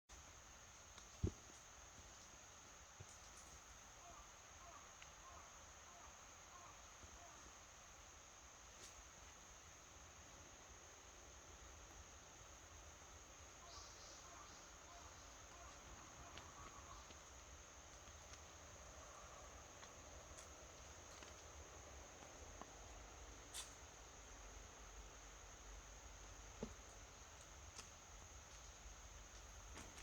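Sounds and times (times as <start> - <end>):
faint high-pitched hiss: 0.1 - 30.0.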